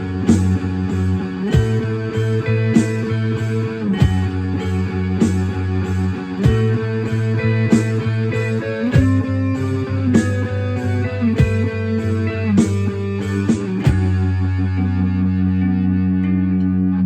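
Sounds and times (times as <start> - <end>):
bass guitar: 0.0 - 17.0
electric guitar: 0.0 - 17.0
sharp percussive hits: 2.7 - 7.0, 10.1 - 11.7.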